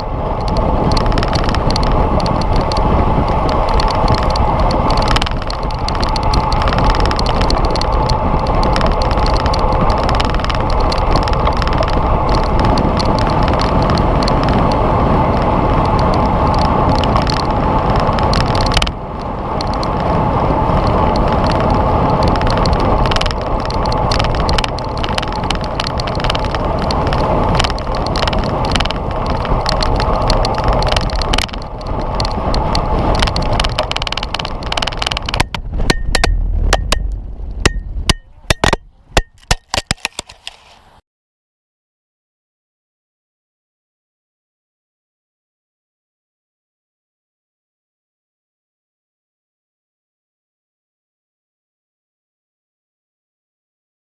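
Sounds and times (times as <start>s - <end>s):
wind and tyre noise: 0.0s - 41.0s.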